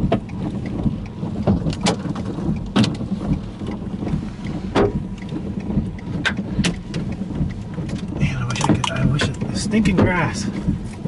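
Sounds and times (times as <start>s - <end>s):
hailstones knocking on truck: 0.0s - 10.9s
steady low rumble: 0.0s - 11.0s.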